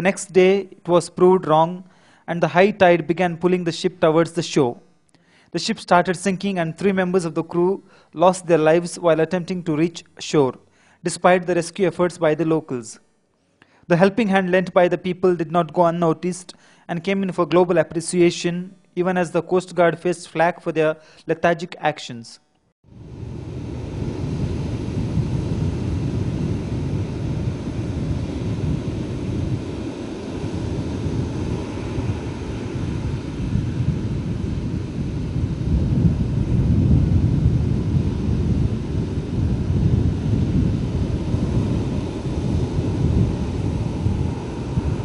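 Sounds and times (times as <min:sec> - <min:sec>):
wind buffeting microphone: 0:22.9 - 0:45.0.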